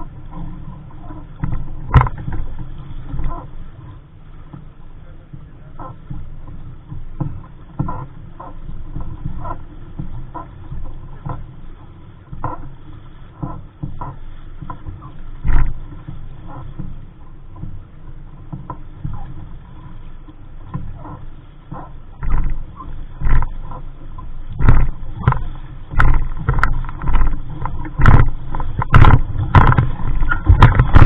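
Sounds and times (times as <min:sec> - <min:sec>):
water splashing against hull: 0:00.0 - 0:31.0
wind buffeting microphone: 0:20.9 - 0:31.0.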